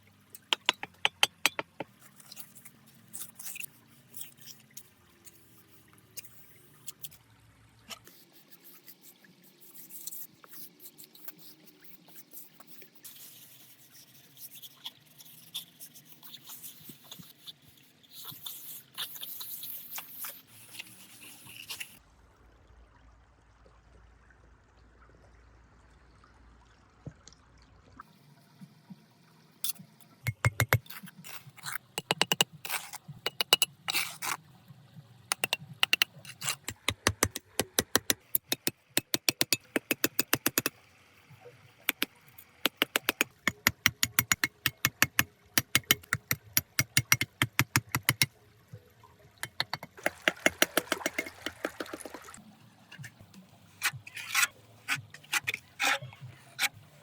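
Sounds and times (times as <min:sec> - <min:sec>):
rapid sharp clicks and taps: 0:35.3 - 0:40.7, 0:41.9 - 0:48.3, 0:49.4 - 0:52.2.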